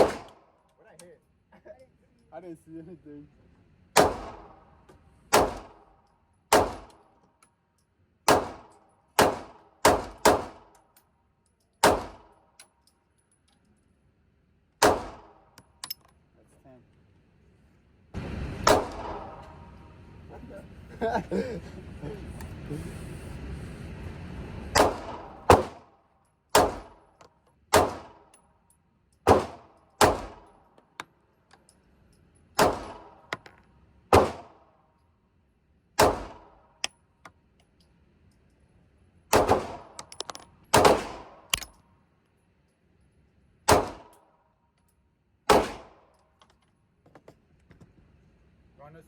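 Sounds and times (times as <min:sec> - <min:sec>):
pistol shots: 0:00.0 - 0:00.5, 0:04.0 - 0:04.7, 0:05.3 - 0:05.9, 0:06.5 - 0:07.1, 0:08.3 - 0:10.8, 0:11.8 - 0:12.4, 0:14.8 - 0:15.6, 0:18.6 - 0:19.6, 0:24.8 - 0:25.9, 0:26.5 - 0:27.1, 0:27.7 - 0:28.3, 0:29.3 - 0:30.6, 0:32.6 - 0:33.3, 0:34.1 - 0:34.7, 0:36.0 - 0:36.7, 0:39.3 - 0:40.1, 0:40.7 - 0:41.7, 0:43.7 - 0:44.2, 0:45.5 - 0:46.1.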